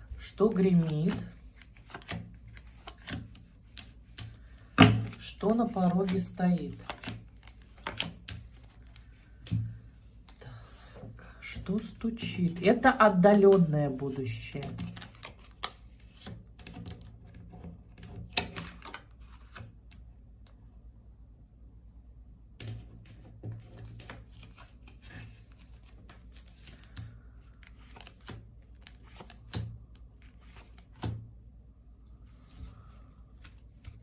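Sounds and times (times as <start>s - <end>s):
cards shuffled and laid down: 0.5s - 10.4s, 14.5s - 19.8s, 22.6s - 31.2s.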